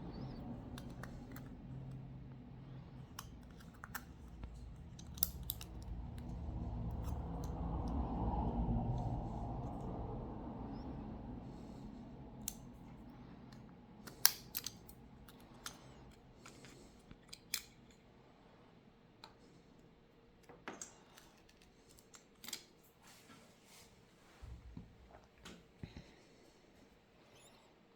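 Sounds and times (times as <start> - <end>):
small tools clicking and tapping: 0.2 - 2.0, 2.7 - 8.0, 13.5 - 18.0.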